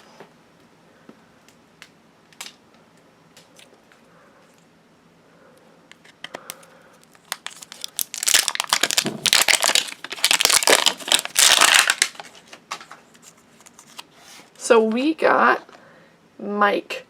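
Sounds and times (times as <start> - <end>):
plastic packaging crinkling: 6.0 - 14.1.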